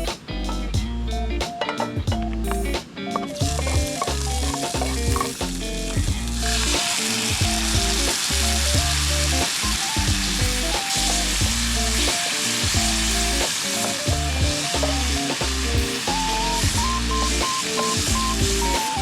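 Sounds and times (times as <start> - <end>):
background music with bass and chords: 0.0 - 19.0
steady hiss: 3.9 - 19.0.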